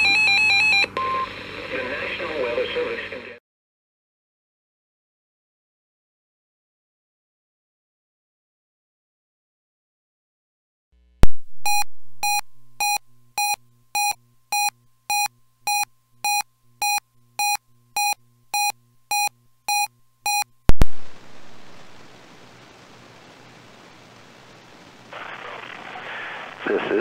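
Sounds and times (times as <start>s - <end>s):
radio static hiss: 1.6s - 3.4s, 20.7s - 27.0s
mid-pitched electronic beeps: 11.2s - 21.0s.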